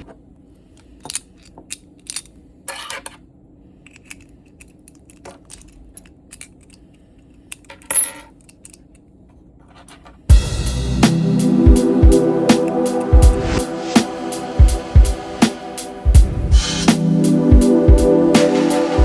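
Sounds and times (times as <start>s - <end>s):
lock picks clicking in padlock: 3.9s - 9.1s.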